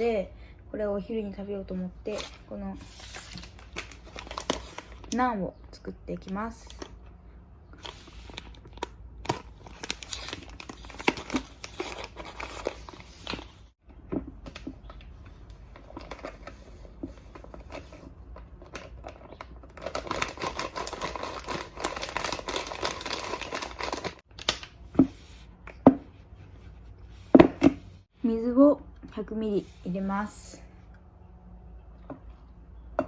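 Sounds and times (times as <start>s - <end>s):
plastic packet crinkling: 3.1s - 5.2s, 7.8s - 13.6s, 17.4s - 24.7s.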